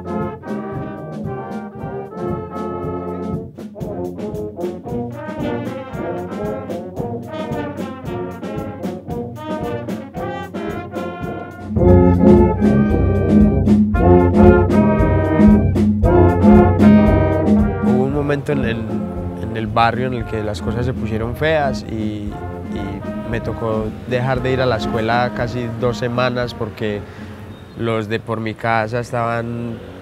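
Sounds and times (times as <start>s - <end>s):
percussion beat: 0.0s - 27.4s
brass band music: 0.0s - 28.1s.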